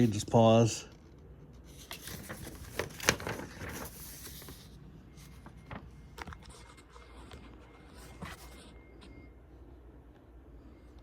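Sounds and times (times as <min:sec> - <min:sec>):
paper rustling: 0:00.0 - 0:08.8.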